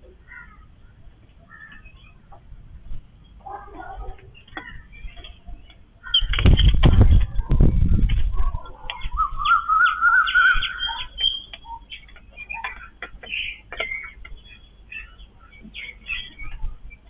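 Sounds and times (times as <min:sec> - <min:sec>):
babblers chattering: 0:00.0 - 0:02.5, 0:03.3 - 0:17.0
low rumble: 0:06.5 - 0:10.8
wavering bird call: 0:08.7 - 0:16.6.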